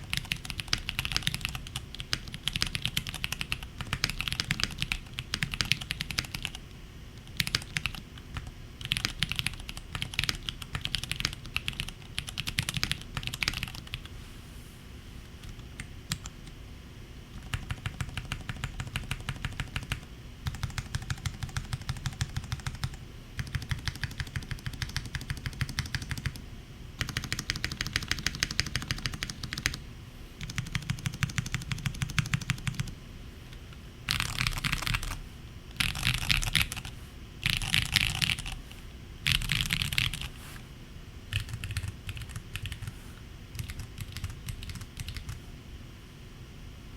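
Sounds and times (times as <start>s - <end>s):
mechanical keyboard typing: 0.0s - 6.6s, 7.2s - 14.1s, 17.4s - 26.4s, 27.0s - 29.8s, 30.4s - 32.9s, 34.1s - 38.6s, 39.2s - 40.3s, 41.3s - 42.9s, 43.5s - 45.4s.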